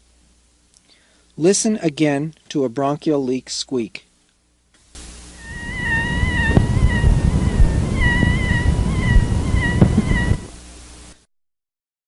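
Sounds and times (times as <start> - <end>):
low rumbling noise: 5.0 - 11.2
high-pitched air leak squeak: 5.4 - 10.5.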